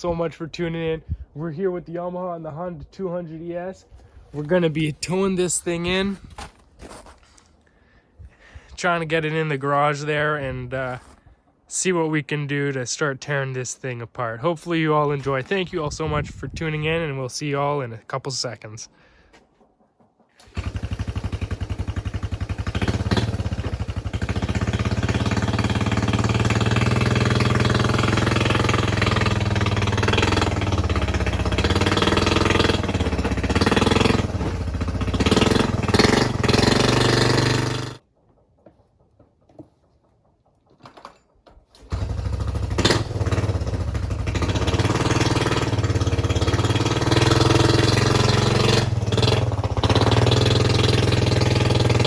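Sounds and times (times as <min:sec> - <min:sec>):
small engine running: 0:20.4 - 0:38.0, 0:41.8 - 0:52.0.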